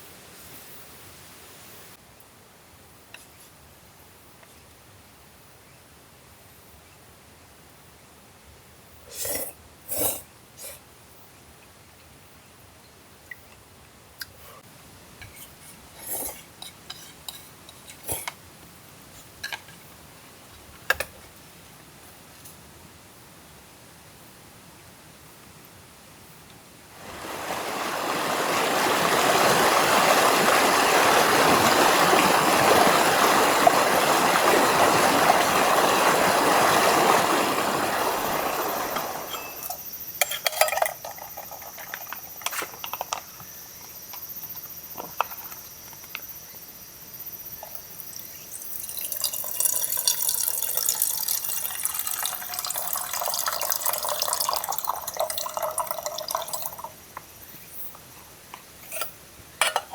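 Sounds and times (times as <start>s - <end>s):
water trickling: 27.0s - 42.9s, 47.4s - 58.1s
water pouring: 27.0s - 43.2s, 47.6s - 57.1s.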